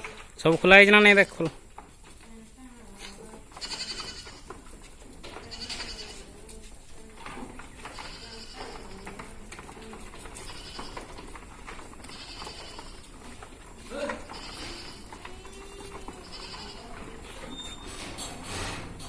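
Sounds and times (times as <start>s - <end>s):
goats bleating: 2.4s - 17.5s.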